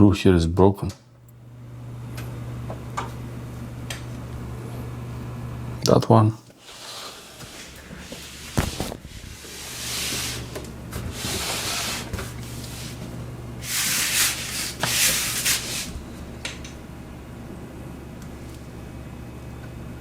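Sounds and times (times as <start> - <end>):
low steady hum: 0.0 - 20.0
rubbing and scraping on pc case: 6.6 - 13.0, 13.6 - 15.9.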